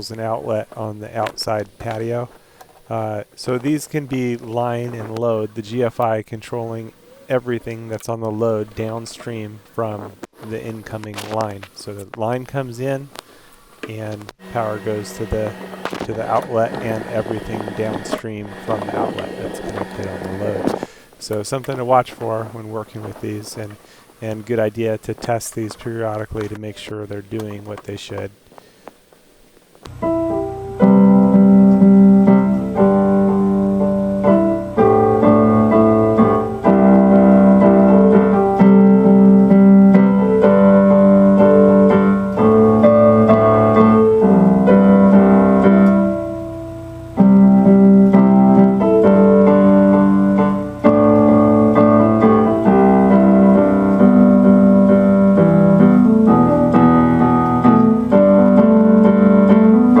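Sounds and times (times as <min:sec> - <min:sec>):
electric piano chords: 0:14.3 - 0:23.7, 0:29.9 - 1:00.0.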